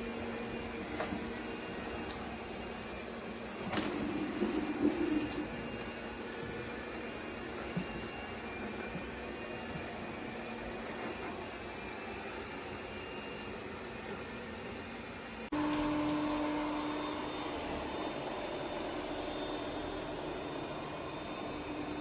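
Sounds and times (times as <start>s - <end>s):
robot vacuum whirring: 15.5s - 22.0s.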